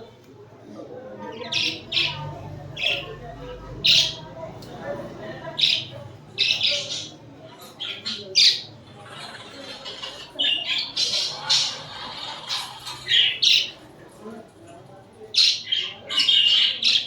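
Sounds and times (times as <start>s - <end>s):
budgerigars squawking and chirping: 1.3s - 3.2s, 3.8s - 4.2s, 5.6s - 13.9s, 15.3s - 17.0s.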